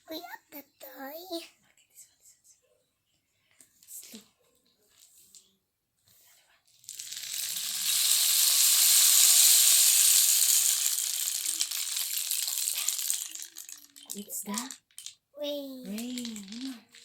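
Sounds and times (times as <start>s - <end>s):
rainstick beads trickling: 6.8s - 17.0s.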